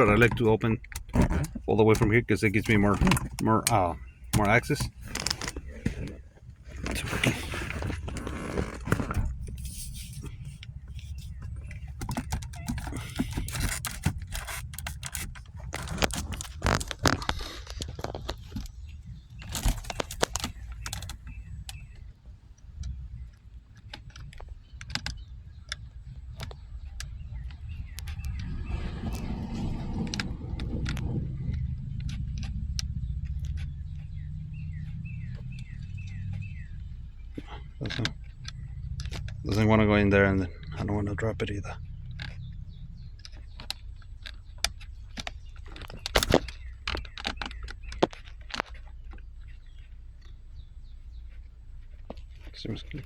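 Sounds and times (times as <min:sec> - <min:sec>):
plastic trim clicks and rattles: 0:00.0 - 0:22.0, 0:42.1 - 0:49.6
rustling and scraping: 0:00.0 - 0:53.0
steady low hum: 0:00.0 - 0:53.0.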